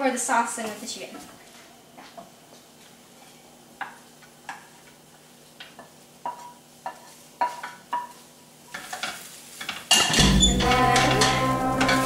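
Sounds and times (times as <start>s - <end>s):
utensil clinking against cookware: 6.2s - 12.0s.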